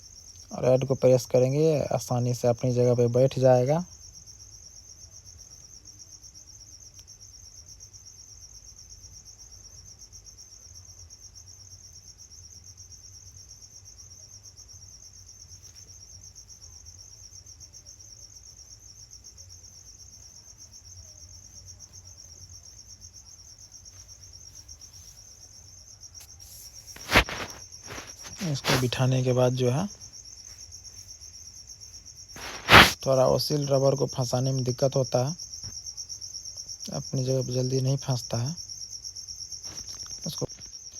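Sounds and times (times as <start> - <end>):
crickets trilling: 0.0 - 40.9.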